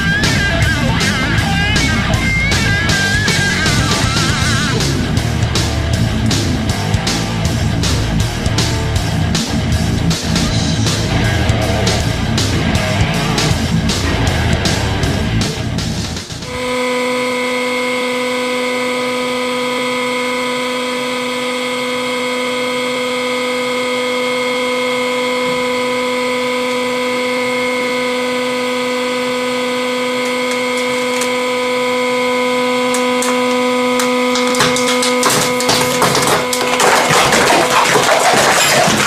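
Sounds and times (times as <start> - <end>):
hydraulic pump whine: 0.0 - 39.0
plastic cracking and crackling: 34.0 - 39.0.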